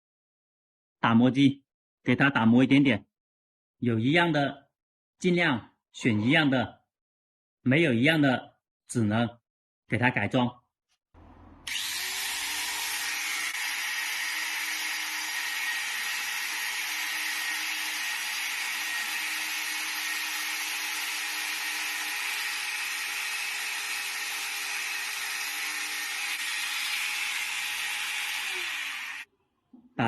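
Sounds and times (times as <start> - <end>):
electric grinder motor humming: 11.2 - 29.3.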